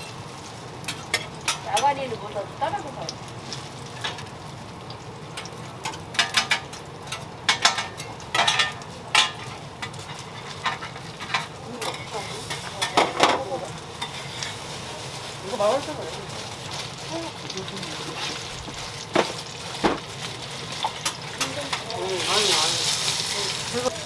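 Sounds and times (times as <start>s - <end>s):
metal utensils scraping and clinking: 0.0s - 2.2s, 3.5s - 4.3s, 5.4s - 24.0s
food sizzling on a griddle: 0.0s - 24.0s.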